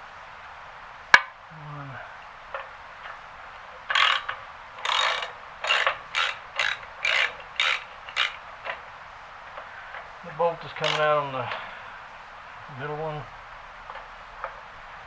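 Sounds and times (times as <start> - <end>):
hand ratchet clicking: 2.5 - 12.1.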